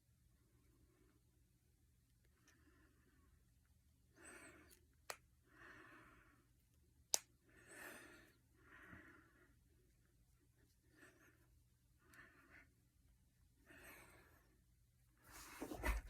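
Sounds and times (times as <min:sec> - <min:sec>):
soft breathing: 0:05.4 - 0:06.6, 0:07.4 - 0:12.8, 0:13.6 - 0:14.6.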